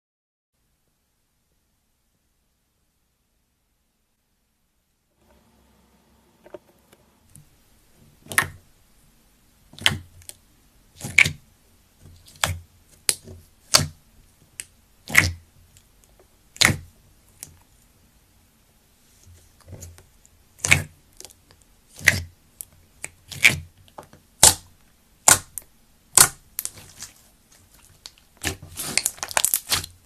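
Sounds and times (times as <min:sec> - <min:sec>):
slime squishing and popping: 0:08.2 - 0:08.6, 0:09.8 - 0:10.4, 0:11.0 - 0:11.4, 0:15.0 - 0:15.4, 0:16.5 - 0:17.5, 0:20.6 - 0:22.3, 0:24.4 - 0:30.0.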